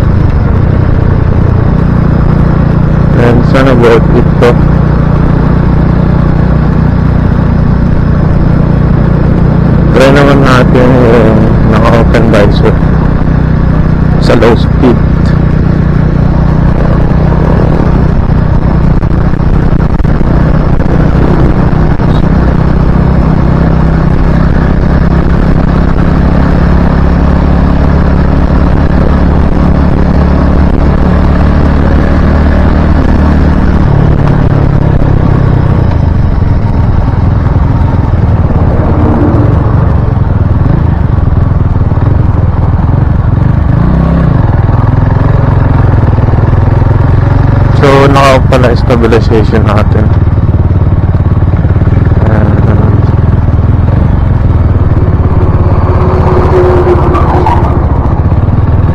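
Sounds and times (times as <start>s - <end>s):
motorcycle engine running: 0.0s - 58.9s
wind noise on microphone: 15.3s - 26.9s, 27.8s - 45.2s.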